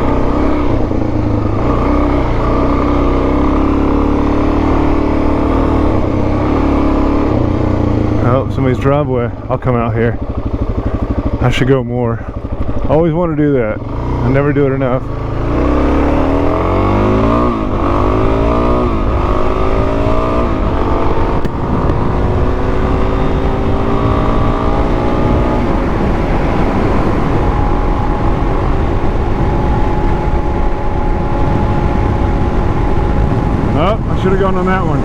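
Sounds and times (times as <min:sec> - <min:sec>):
dirt bike engine accelerating: 0:00.0 - 0:35.0
wind rush: 0:16.3 - 0:35.0.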